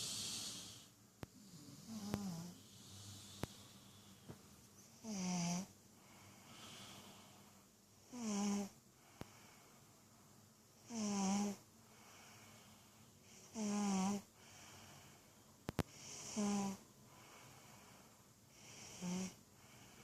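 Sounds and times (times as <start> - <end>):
person snoring: 0.0 - 3.8, 5.0 - 5.7, 8.0 - 8.8, 10.8 - 12.4, 13.4 - 14.8, 15.9 - 16.8, 18.6 - 19.4
soft breaths: 0.0 - 20.0.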